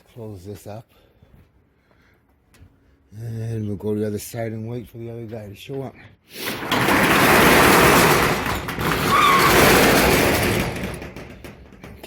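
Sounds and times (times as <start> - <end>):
metal locker door clattering: 6.5 - 12.0.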